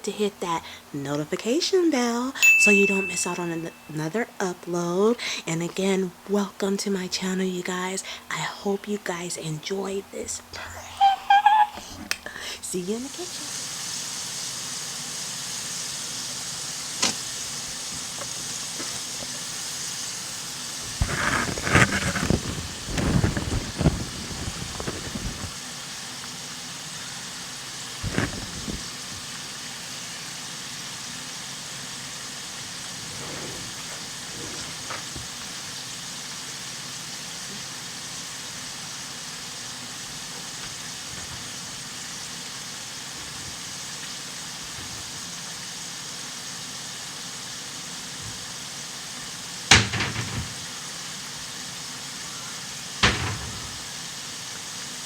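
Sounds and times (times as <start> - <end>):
steady hiss: 0.0 - 55.0
sharp knocks and clatters: 49.7 - 50.8, 53.0 - 54.0.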